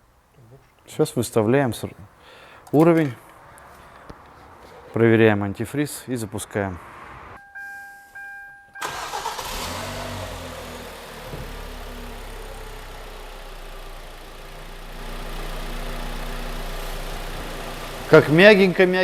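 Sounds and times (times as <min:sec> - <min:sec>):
car engine starting and idling: 0:08.8 - 0:19.0.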